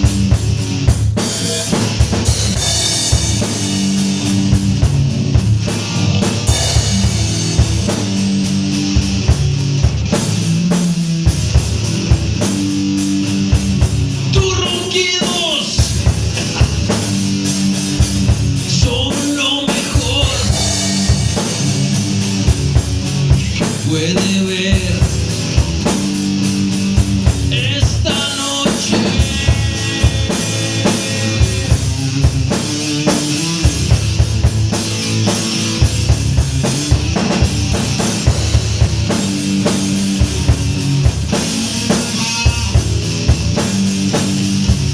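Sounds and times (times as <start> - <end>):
heavy metal song: 0.0 - 44.9
voice over the band: 14.2 - 17.1, 18.7 - 20.7.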